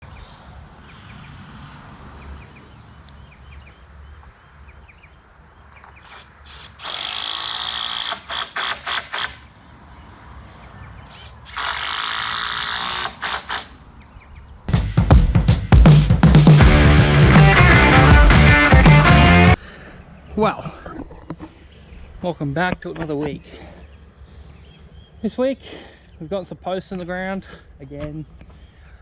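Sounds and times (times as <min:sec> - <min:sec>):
handheld power tool running: 0:06.8 - 0:09.4, 0:11.5 - 0:13.7
faint birds chirping: 0:21.6 - 0:29.0.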